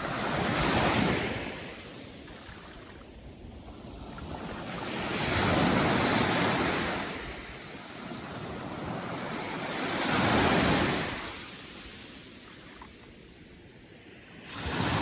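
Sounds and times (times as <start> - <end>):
small waves breaking on shore: 0.0 - 15.0.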